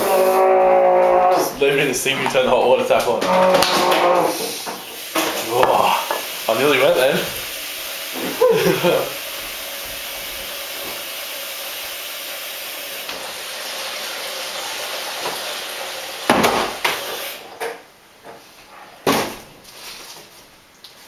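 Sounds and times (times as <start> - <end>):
tap water running into sink: 0.0 - 17.4
hard objects knocking in sink: 0.6 - 7.4, 16.3 - 17.0.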